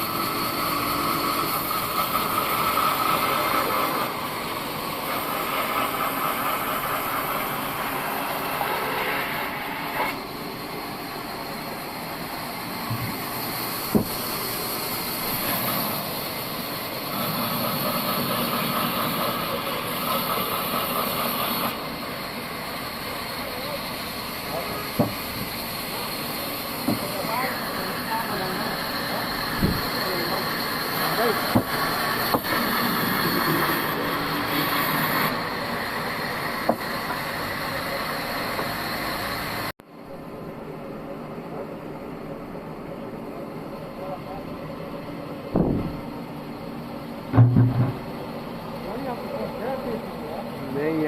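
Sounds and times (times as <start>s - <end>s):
bandsaw sawmill running: 0.0s - 39.7s, 41.5s - 51.0s
sharp knock: 13.9s - 14.2s, 45.6s - 46.0s, 47.3s - 48.1s.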